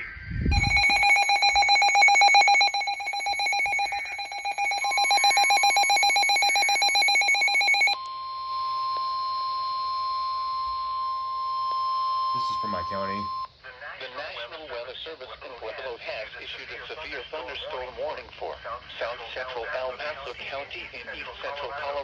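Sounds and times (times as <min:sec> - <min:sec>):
pulsing electronic alarm warble: 0:00.0 - 0:13.5
steady single-pitch alarm tone: 0:00.0 - 0:13.5.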